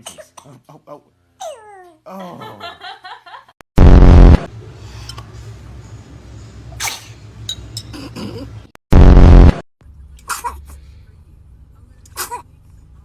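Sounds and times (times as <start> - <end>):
baby sneezing: 10.2 - 10.7, 12.1 - 12.4.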